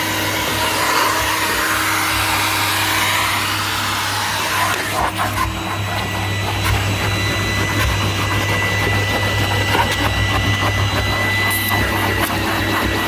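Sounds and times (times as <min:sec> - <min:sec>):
vacuum cleaner running: 0:00.0 - 0:13.0
nozzle knocking and rubbing on stairs: 0:04.5 - 0:13.0.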